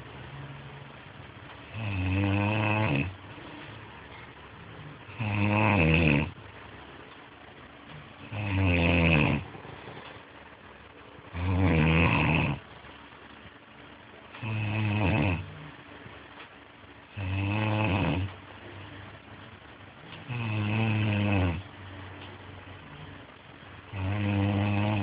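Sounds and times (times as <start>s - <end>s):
loud snoring: 1.7s - 3.2s, 5.1s - 6.4s, 8.2s - 9.6s, 11.3s - 12.6s, 14.4s - 15.7s, 17.1s - 18.3s, 20.2s - 21.6s, 23.9s - 25.0s
quiet breathing: 1.7s - 6.4s.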